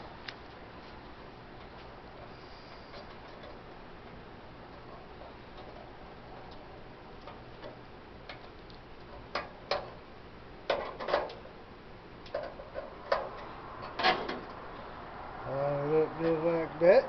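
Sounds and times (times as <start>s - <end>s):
camp stove parts clicking: 2.9s - 3.7s, 4.7s - 10.0s, 10.6s - 11.5s, 12.2s - 14.6s.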